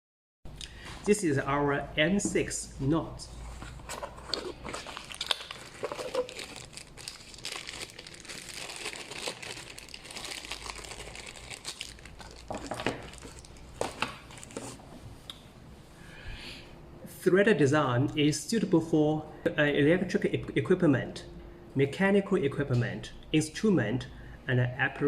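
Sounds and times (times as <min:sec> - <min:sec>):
plastic packaging crinkling: 0:03.6 - 0:14.8.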